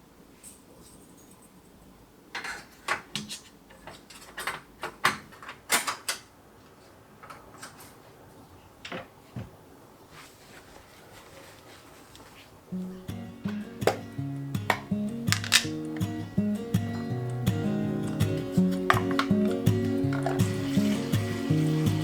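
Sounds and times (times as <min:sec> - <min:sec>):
kitchen items clicking and knocking: 0:02.3 - 0:06.2, 0:14.6 - 0:15.8, 0:18.9 - 0:20.5.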